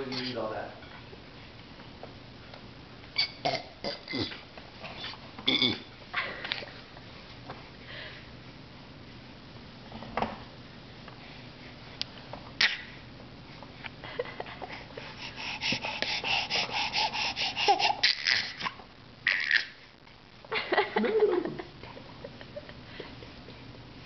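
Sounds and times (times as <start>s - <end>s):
baby snorting: 15.0s - 18.8s
baby making airy sputters: 15.1s - 19.8s.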